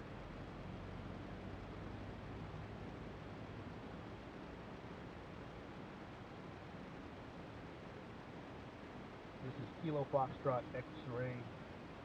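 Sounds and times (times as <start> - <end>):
faint steady hiss: 0.0 - 12.0.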